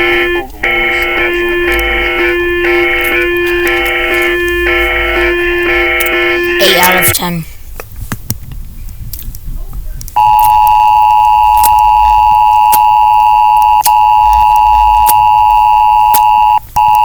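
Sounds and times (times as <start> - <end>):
two-pitch electronic alert tone: 0.0 - 7.4.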